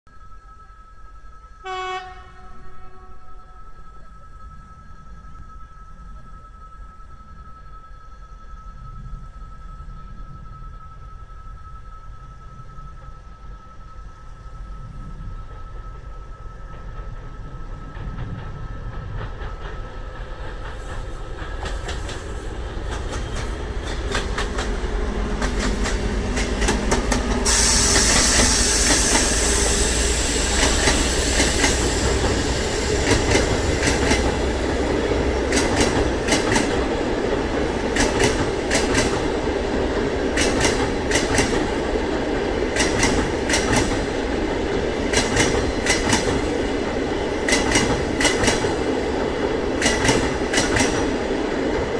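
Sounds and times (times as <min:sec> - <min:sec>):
diesel locomotive engine drone: 0:00.1 - 0:51.9
train wheels clacking over rail joints: 0:16.7 - 0:51.9
rush of hiss: 0:24.6 - 0:36.4.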